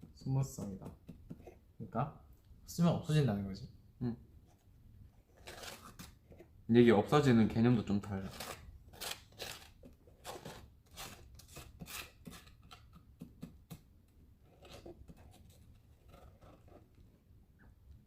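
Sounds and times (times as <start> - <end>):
scratching and rustling handling: 7.8 - 17.3.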